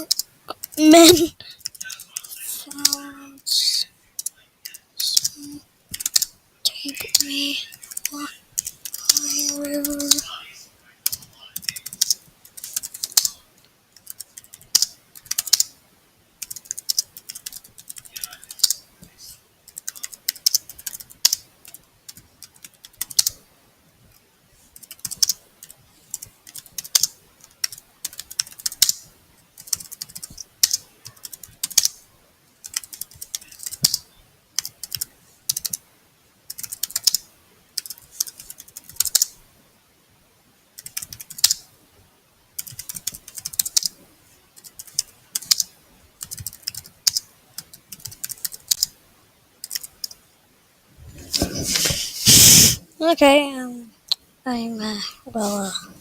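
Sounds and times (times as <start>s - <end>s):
typing on computer keyboard: 0.0s - 1.0s, 1.6s - 3.0s, 4.2s - 6.3s, 7.0s - 10.2s, 11.0s - 15.7s, 16.4s - 18.8s, 19.7s - 23.4s, 24.1s - 32.0s, 32.6s - 35.8s, 36.5s - 39.4s, 40.8s - 41.6s, 42.6s - 44.0s, 44.6s - 49.0s, 49.6s - 50.2s.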